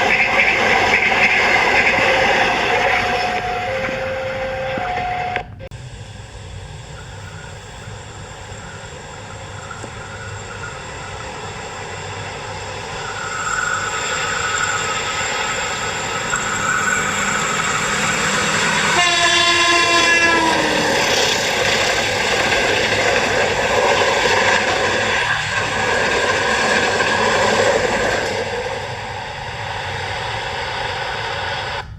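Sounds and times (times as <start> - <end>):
train rumbling past: 0.0 - 31.9
locomotive horn blast: 1.8 - 5.8, 18.5 - 21.1.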